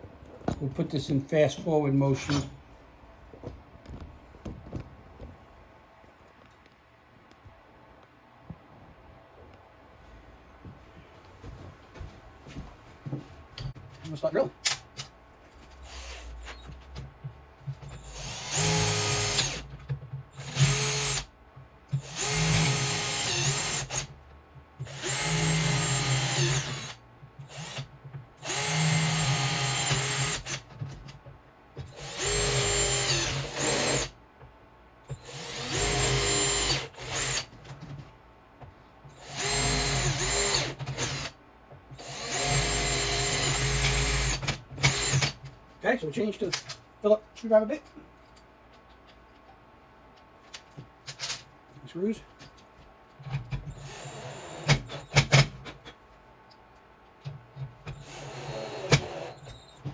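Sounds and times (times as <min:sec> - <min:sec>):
power drill drilling: 0:18.0 - 0:19.6, 0:20.4 - 0:21.3, 0:22.0 - 0:24.0, 0:24.8 - 0:27.8, 0:28.4 - 0:30.6, 0:32.0 - 0:34.1, 0:35.1 - 0:37.5, 0:39.2 - 0:41.3, 0:42.0 - 0:45.3, 0:57.9 - 0:59.7.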